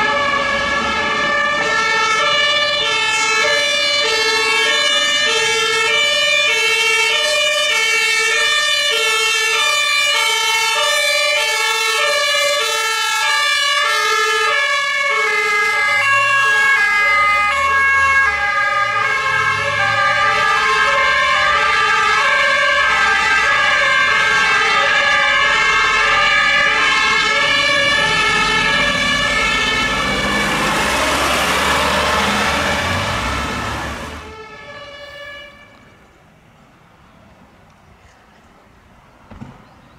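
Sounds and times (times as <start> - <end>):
two-tone emergency sirens: 0.0 - 36.0
heavy diesel engines running: 15.0 - 35.6.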